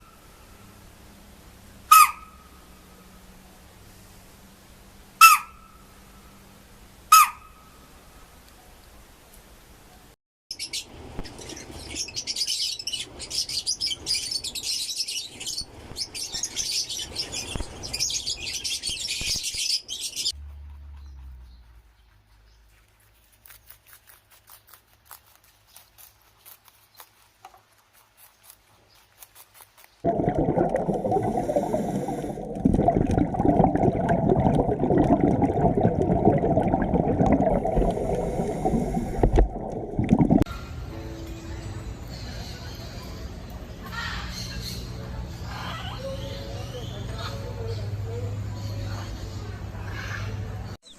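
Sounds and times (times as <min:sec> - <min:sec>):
birds chirping: 0:10.5 - 0:20.4.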